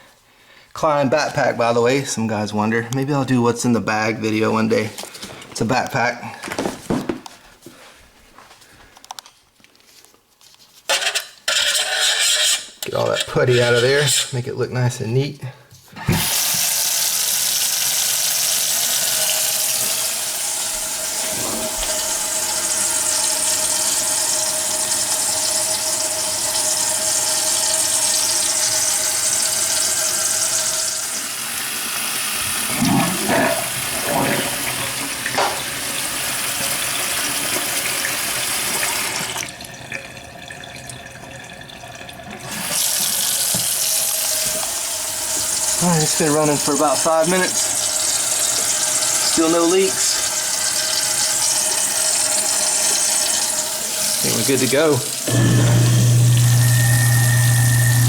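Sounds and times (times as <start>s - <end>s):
tap water running into sink: 16.0s - 58.0s.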